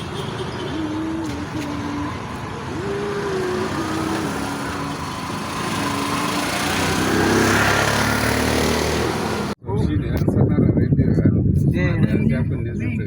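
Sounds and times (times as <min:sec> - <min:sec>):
road traffic: 0:00.0 - 0:09.6
small engine revving: 0:00.0 - 0:09.6.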